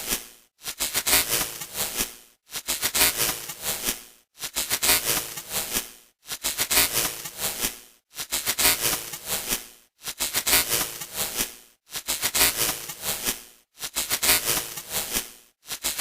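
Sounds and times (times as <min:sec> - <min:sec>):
crackling tv static: 0:15.7 - 0:16.0.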